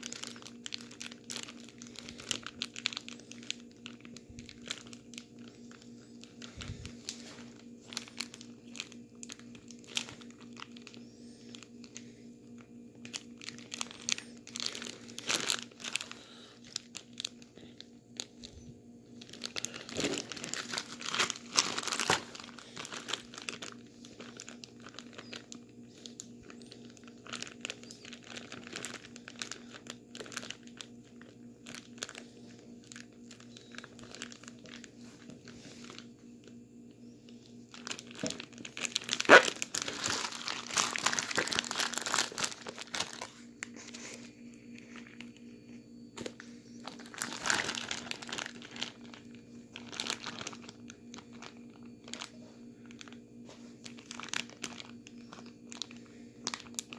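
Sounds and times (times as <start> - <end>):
plastic bag of ice crinkling: 0.0 - 56.9.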